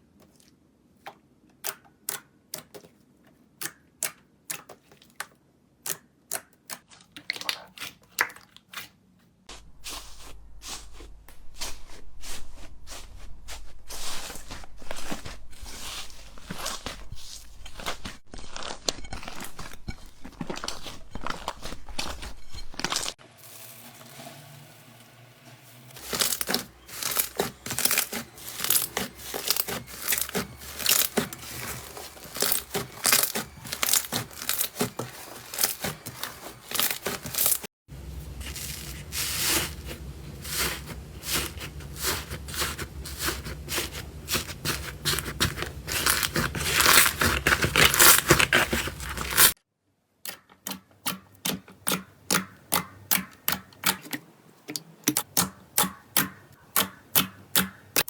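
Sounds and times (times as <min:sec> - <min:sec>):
slime crackling and popping: 0:26.0 - 0:37.6, 0:40.5 - 0:49.6.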